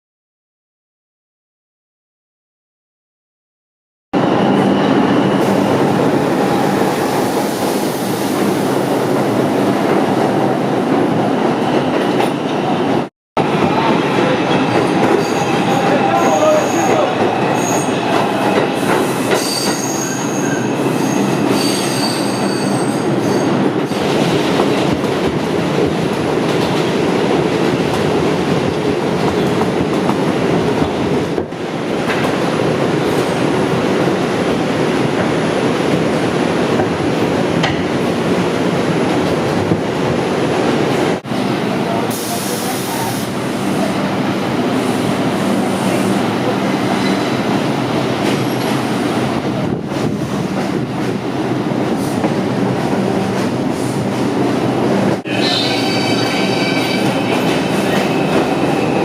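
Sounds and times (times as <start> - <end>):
high-pitched wheel squeal: 19.4 - 23.5, 55.4 - 57.3.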